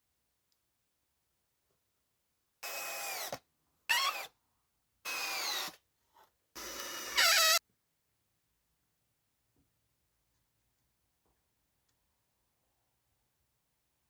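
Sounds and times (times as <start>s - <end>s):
power drill whining: 2.6s - 4.3s, 5.1s - 5.8s, 6.6s - 7.6s.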